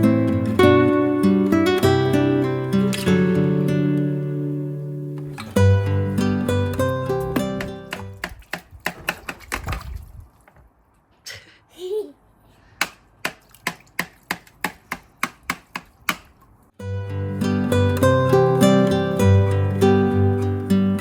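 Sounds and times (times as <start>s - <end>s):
guitar music: 0.0s - 8.2s, 16.8s - 21.0s
sharp taps: 12.8s - 16.4s.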